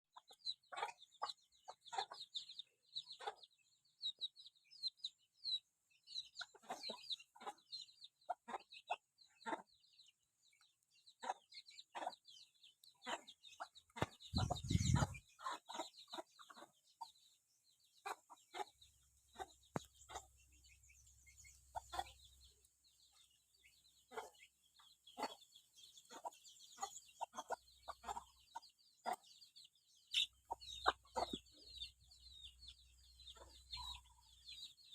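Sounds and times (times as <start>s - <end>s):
birds calling: 0.1s - 34.9s
high chirping: 11.2s - 17.2s, 18.0s - 34.9s.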